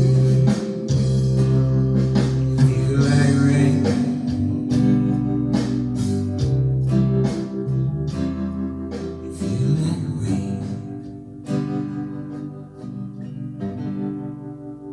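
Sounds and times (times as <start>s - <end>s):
acoustic guitar strumming: 0.0s - 14.9s.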